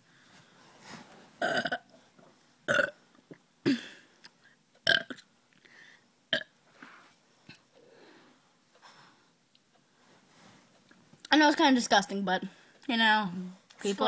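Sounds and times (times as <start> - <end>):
girl burping: 1.4 - 1.8, 2.7 - 3.0, 3.6 - 4.0.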